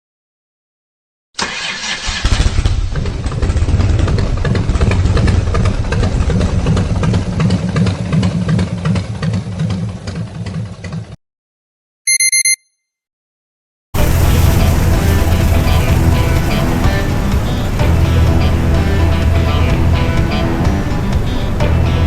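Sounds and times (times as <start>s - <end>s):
motorcycle engine running: 2.3s - 11.2s, 14.0s - 22.0s
short electronic beep: 12.1s - 12.9s.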